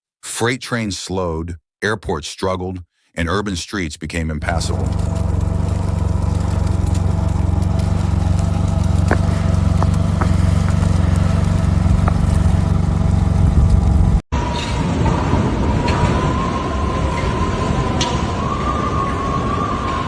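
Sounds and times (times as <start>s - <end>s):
motor vehicle rumbling: 4.5s - 20.0s.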